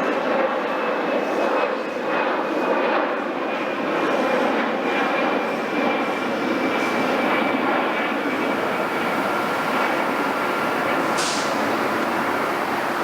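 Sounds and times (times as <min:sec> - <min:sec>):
jet aircraft engine noise: 0:00.0 - 0:13.0
faint high whine: 0:04.8 - 0:13.0.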